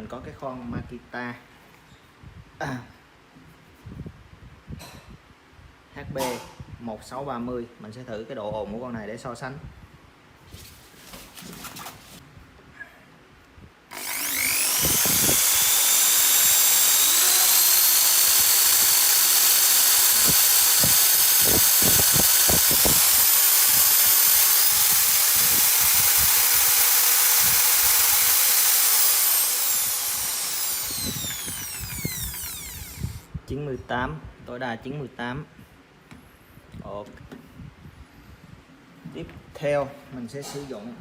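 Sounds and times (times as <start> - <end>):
hammer drill motor whining: 13.9 - 33.3.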